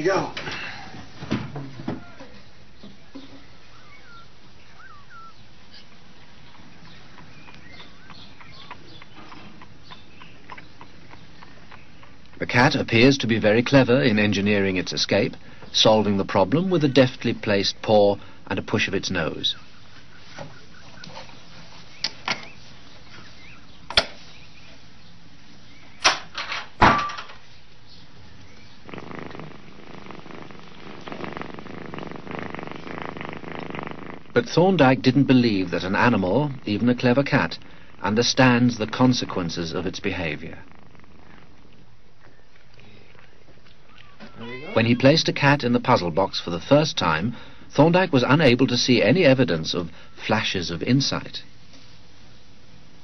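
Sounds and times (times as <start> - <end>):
steady background hiss: 0.0 - 53.0
cat purring: 3.7 - 15.5, 28.2 - 43.6.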